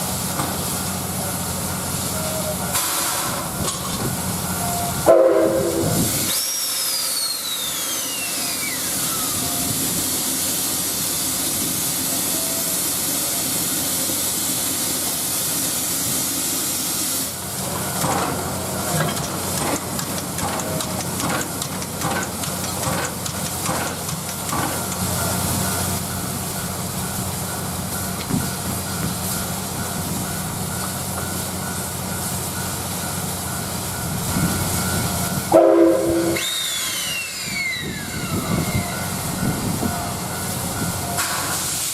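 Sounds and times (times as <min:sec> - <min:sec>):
steam locomotive hissing: 0:00.0 - 0:41.9
steam whistle blast: 0:04.7 - 0:10.0, 0:35.4 - 0:39.2.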